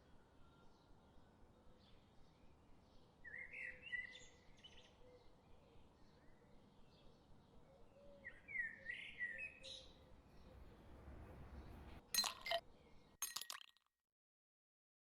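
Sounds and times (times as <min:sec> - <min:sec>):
bird chirping: 0:06.0 - 0:13.1.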